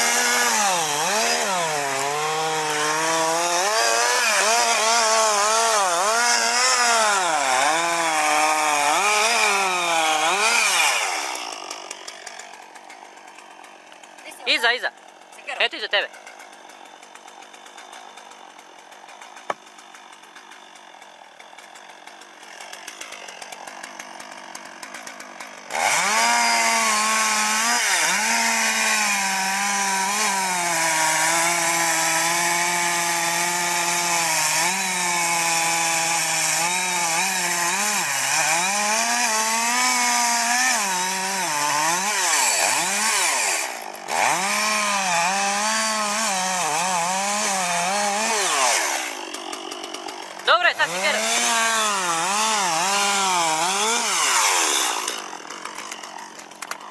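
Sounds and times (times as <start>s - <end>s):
chainsaw cutting a tree: 0.0s - 56.9s.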